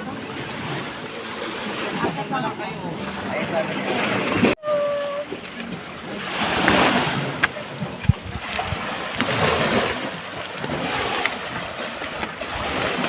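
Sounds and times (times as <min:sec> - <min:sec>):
sea waves on shore: 0:00.0 - 0:13.0
wind on microphone: 0:03.1 - 0:13.0.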